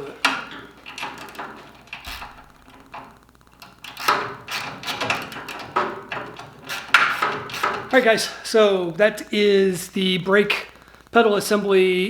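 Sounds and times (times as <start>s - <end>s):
hand tools clicking on metal: 0.0s - 8.6s.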